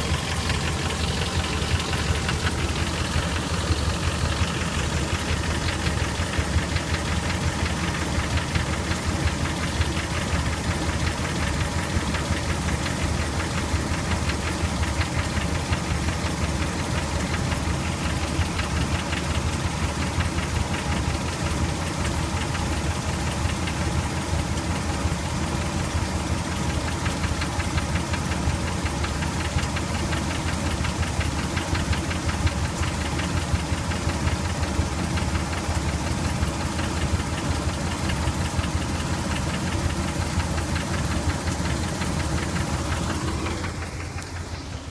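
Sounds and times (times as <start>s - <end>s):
car engine idling: 0.0s - 44.9s
rapid engine knocking: 0.0s - 44.9s.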